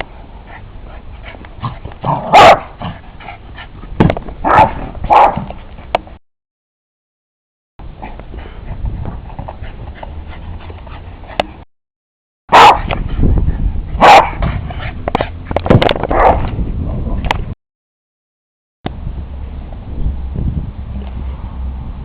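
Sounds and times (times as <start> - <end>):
dog barking: 2.1 - 2.8, 4.4 - 5.5, 12.5 - 12.9, 14.0 - 14.4, 16.1 - 16.4.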